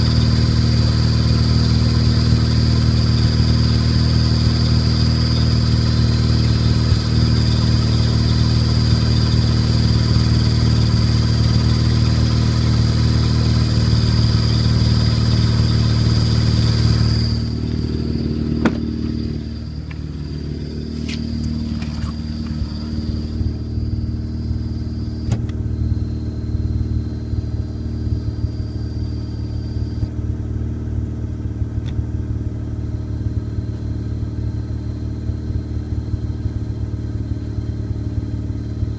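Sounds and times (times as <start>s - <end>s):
high-pitched clutch chirp: 0.0s - 30.1s
rotary engine idling: 0.0s - 30.1s.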